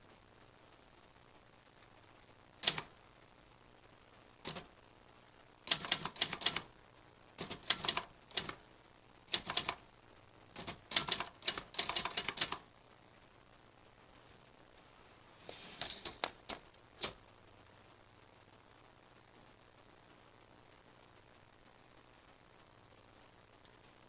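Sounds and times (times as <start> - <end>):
typewriter keystrokes: 2.6 - 3.0, 4.5 - 4.7, 5.7 - 6.8, 7.4 - 9.8, 10.6 - 12.7, 15.8 - 17.2.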